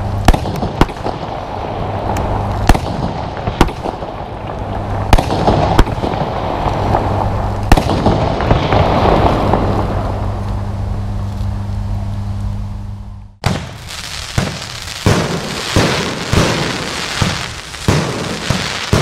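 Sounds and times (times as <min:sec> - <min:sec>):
firework crackling and hissing: 0:00.0 - 0:11.7, 0:13.4 - 0:19.0
firework shells banging: 0:13.4 - 0:19.0.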